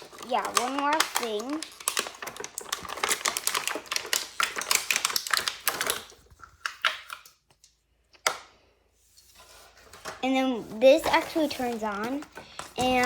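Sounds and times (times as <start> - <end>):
plastic pieces clicking: 0.0 - 8.5.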